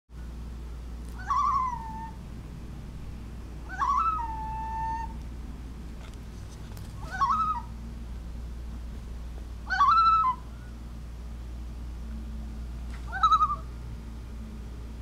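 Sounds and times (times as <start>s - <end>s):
steady low hum: 0.1s - 15.0s
animal calls through speakers: 1.2s - 2.2s, 3.6s - 5.2s, 7.0s - 7.8s, 9.6s - 10.6s, 13.1s - 13.7s.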